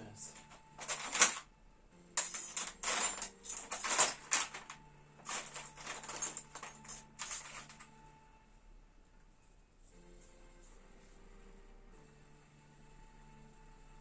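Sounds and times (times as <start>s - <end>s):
hands rustling and clacking: 0.3s - 1.4s, 2.2s - 7.9s.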